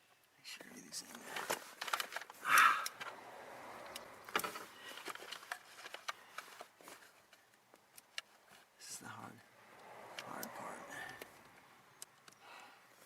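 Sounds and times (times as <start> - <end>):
soft rustle: 0.6 - 7.6.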